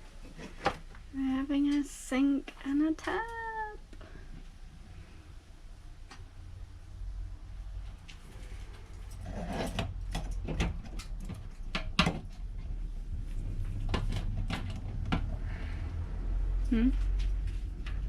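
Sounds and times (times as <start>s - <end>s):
low steady hum: 0.0s - 18.0s
sharp knocks and clatters: 13.7s - 15.4s.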